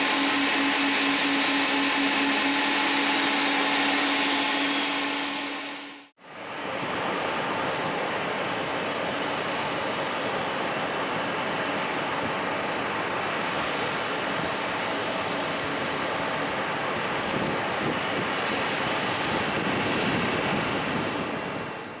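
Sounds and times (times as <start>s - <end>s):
jet airliner engine roar: 0.0s - 22.0s.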